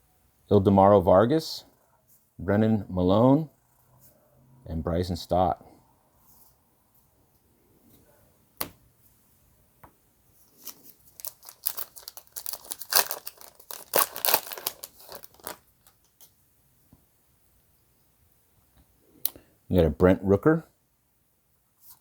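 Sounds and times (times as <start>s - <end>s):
wrapper tearing and crinkling: 10.6s - 16.0s.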